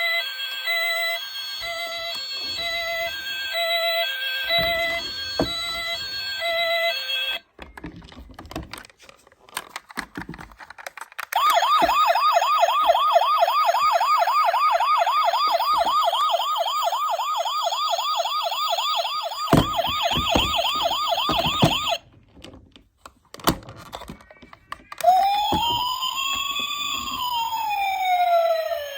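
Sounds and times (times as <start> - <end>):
toy siren warbling: 0.0 - 7.4, 11.4 - 22.0, 24.0 - 28.9.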